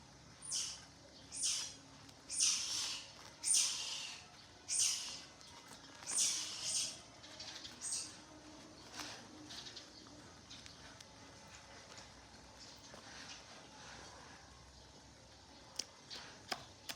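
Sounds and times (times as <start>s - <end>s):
baby monkey squealing: 0.4s - 5.2s, 6.1s - 7.0s.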